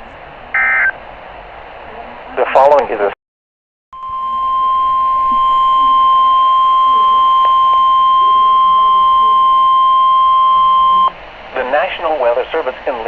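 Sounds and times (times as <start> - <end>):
long loud alarm beep: 0.6 - 1.0, 4.0 - 11.1
faint radio static: 1.8 - 3.2, 5.2 - 13.0.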